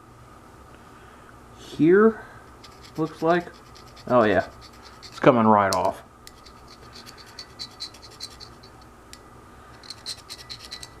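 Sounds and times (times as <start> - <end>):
cleaning tool scraping metal: 2.6 - 5.3, 6.3 - 8.8, 9.7 - 11.0.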